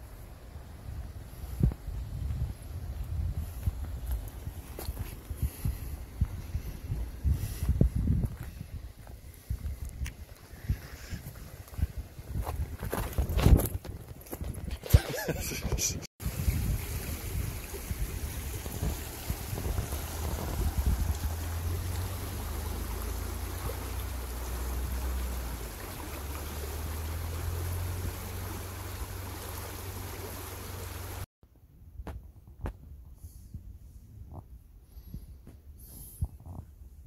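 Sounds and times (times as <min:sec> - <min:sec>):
wind rumble on microphone: 0:00.0 - 0:37.0
falling water rushing: 0:16.2 - 0:31.3.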